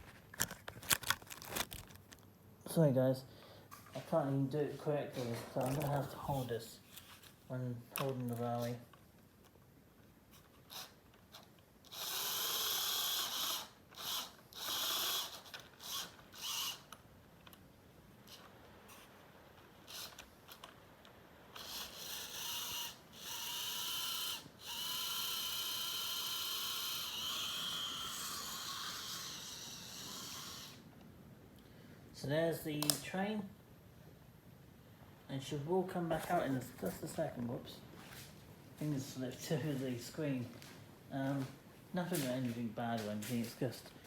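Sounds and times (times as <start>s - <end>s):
model train motor whirring: 10.4s - 17.0s, 19.8s - 20.8s, 21.5s - 30.9s.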